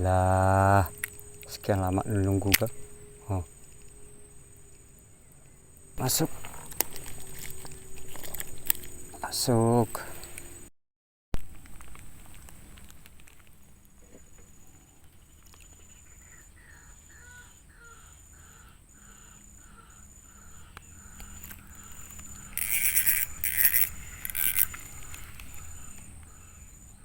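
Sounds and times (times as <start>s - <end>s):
high-pitched pulsing tone: 0.0s - 9.3s
loud harsh animal calls: 16.1s - 27.0s.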